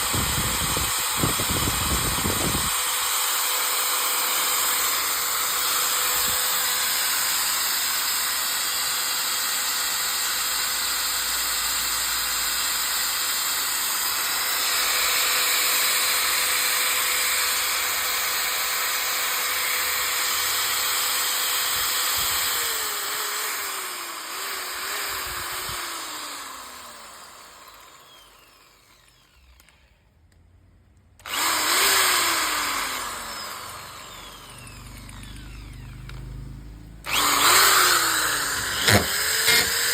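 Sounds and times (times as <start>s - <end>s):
electric drill running: 0.0s - 30.0s, 31.2s - 39.9s.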